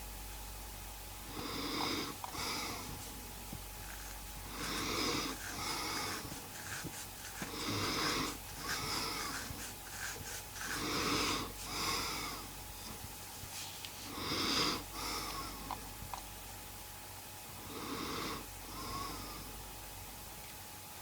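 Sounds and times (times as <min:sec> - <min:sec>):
man snoring with wheezy breaths: 0:01.2 - 0:03.0, 0:03.8 - 0:12.5, 0:17.6 - 0:19.5.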